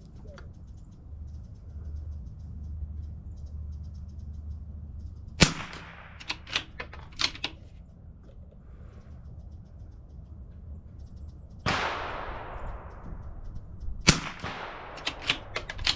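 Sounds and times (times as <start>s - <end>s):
rifle bolt clicking: 5.4s - 7.6s, 14.1s - 15.9s
rifle shot: 5.4s - 7.6s, 11.7s - 13.4s, 14.1s - 15.9s.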